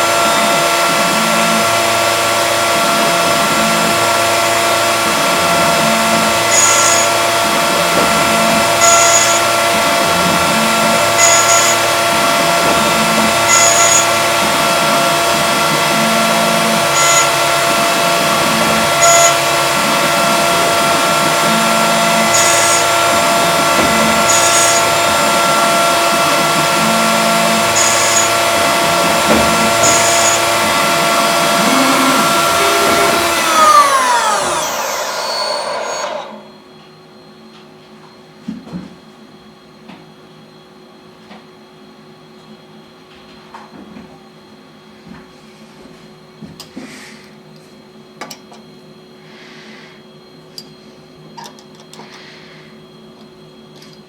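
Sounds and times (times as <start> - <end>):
axis drives humming: 0.0 - 36.7
milling spindle whine: 0.0 - 36.8.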